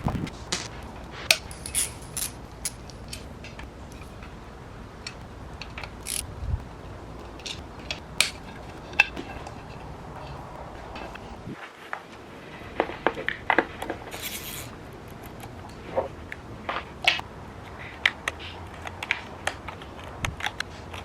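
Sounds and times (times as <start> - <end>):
hand tools clicking and clinking: 0.4 - 11.4, 12.5 - 16.1.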